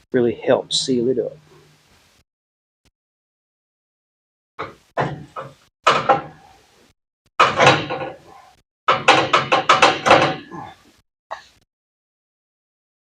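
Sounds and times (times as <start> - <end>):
metallic knocks and clanks: 4.6 - 6.4, 7.4 - 10.6.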